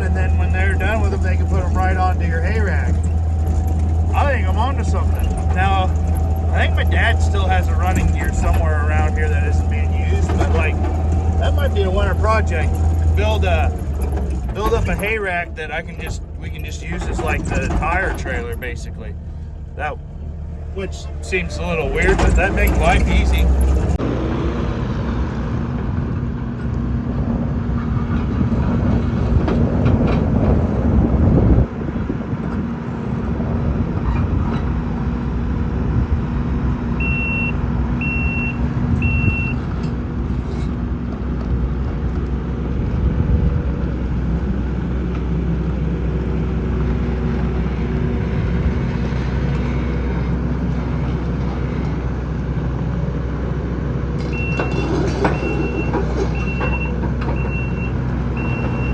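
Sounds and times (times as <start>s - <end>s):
farm machine engine running: 0.0s - 24.0s
reversing alarm beeps: 37.0s - 39.6s, 54.2s - 58.9s.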